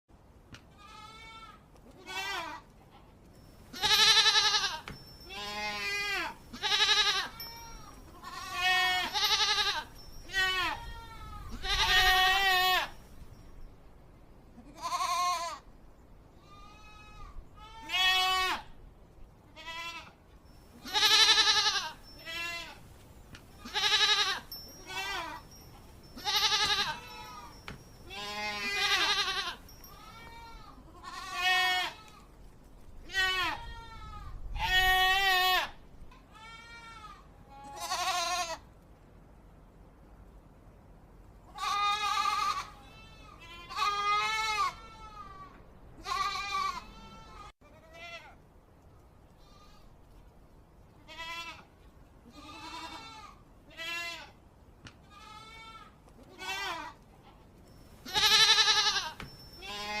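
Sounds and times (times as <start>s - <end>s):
goats bleating: 3.8s - 13.0s, 20.8s - 22.8s, 23.6s - 25.4s, 26.2s - 32.3s, 41.6s - 48.3s, 52.3s - 54.4s, 55.1s - 57.0s, 58.1s - 60.0s.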